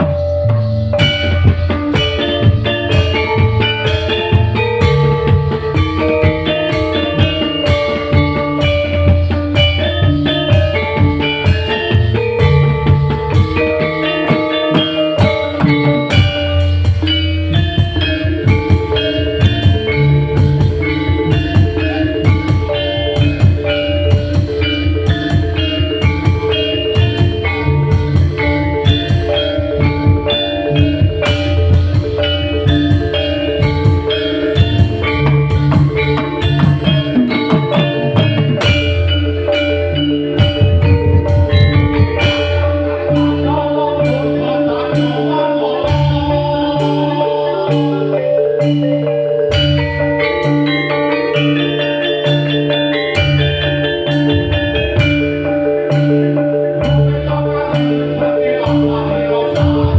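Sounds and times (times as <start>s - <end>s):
live band playing: 0.0s - 59.9s.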